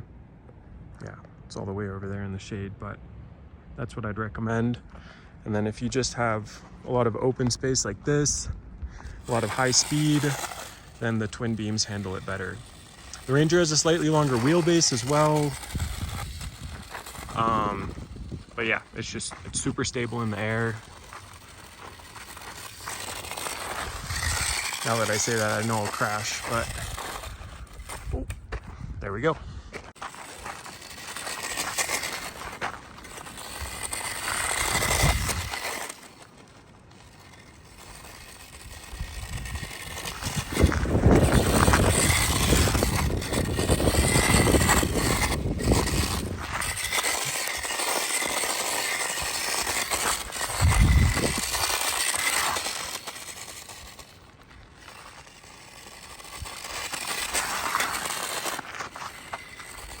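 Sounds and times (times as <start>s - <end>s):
tyres crunching over gravel: 9.0s - 60.0s
electric motor whine: 9.2s - 28.4s, 30.0s - 60.0s
wind rumble on microphone: 15.6s - 19.8s, 26.6s - 29.7s, 38.6s - 46.8s, 50.4s - 51.6s.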